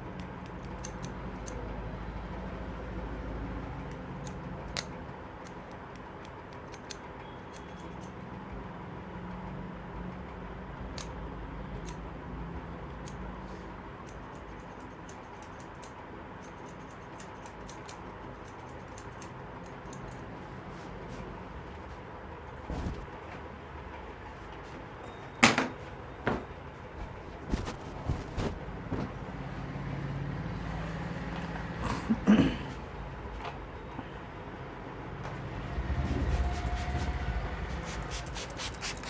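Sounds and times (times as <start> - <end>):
scissors snipping hair: 0.2 - 1.6, 4.2 - 8.2, 14.1 - 20.2, 30.5 - 31.8, 37.8 - 39.0
steady background hum: 9.5 - 39.0.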